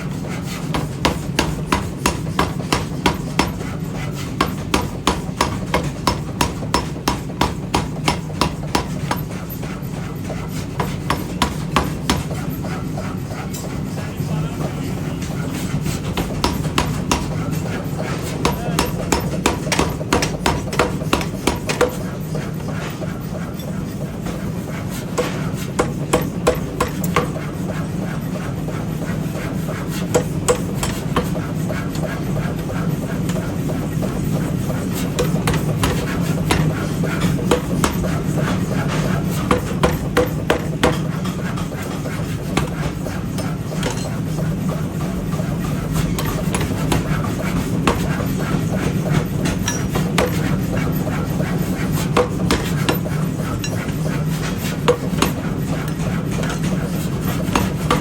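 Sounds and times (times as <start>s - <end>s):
hammer striking metal: 4.4s - 9.3s, 18.4s - 22.1s, 52.1s - 53.9s.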